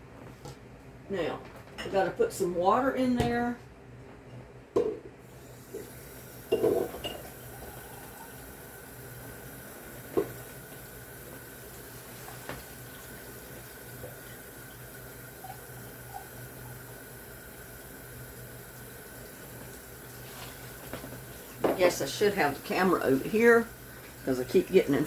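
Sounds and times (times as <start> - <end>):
water running into a pot: 5.2 - 25.0
pot clattering: 6.5 - 7.4.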